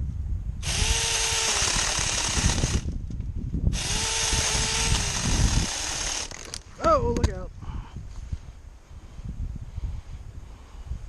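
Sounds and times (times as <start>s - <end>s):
chainsaw motor whine: 0.6s - 2.9s, 3.8s - 6.6s
chain cutting into branch: 3.8s - 6.7s.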